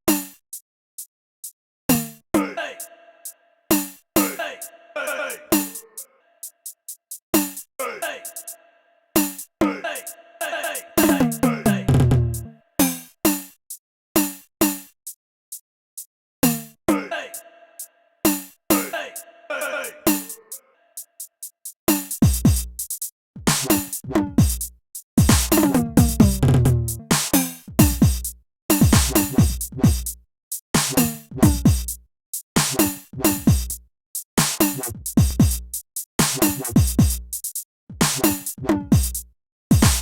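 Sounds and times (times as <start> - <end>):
electronic music with drum-machine beat: 11.0 - 12.5, 23.5 - 30.2, 30.8 - 32.0, 32.6 - 40.0.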